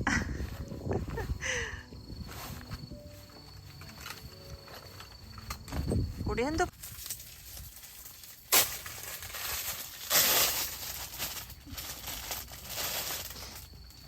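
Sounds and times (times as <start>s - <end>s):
rustling and crinkling: 0.2s - 14.0s
sharp crackle: 6.7s - 14.0s.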